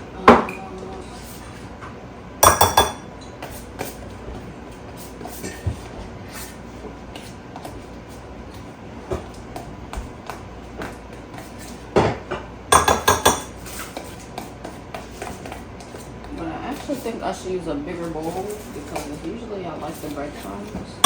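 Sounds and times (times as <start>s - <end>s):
utensil clinking against bowl: 2.4s - 3.1s, 12.0s - 14.1s.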